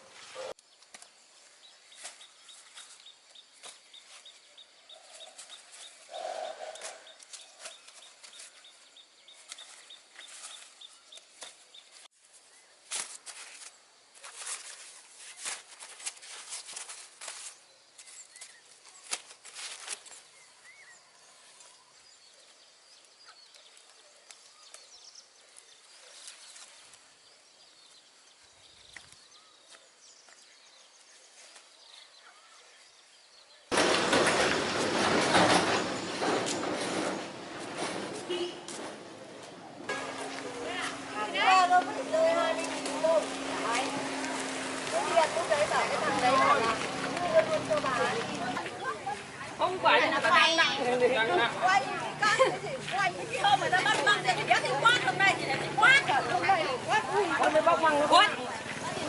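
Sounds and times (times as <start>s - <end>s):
rustling and light knocks: 33.7s - 41.1s.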